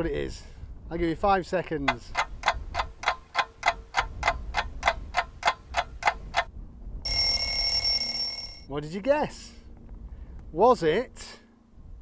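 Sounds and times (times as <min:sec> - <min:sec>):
loud bell-like tone: 0:07.1 - 0:08.7.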